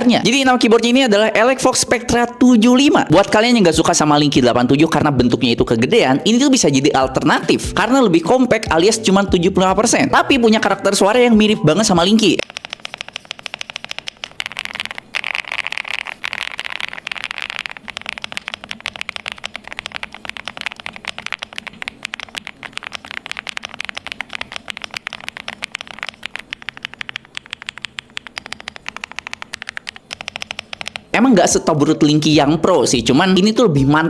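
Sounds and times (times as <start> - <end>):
mechanical keyboard typing: 12.1 - 31.2.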